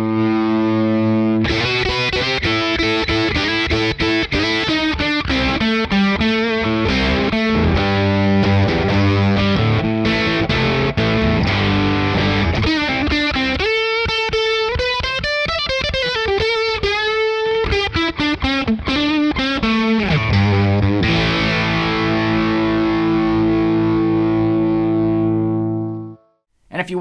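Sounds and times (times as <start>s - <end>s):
overdriven electric guitar: 0.0s - 26.1s.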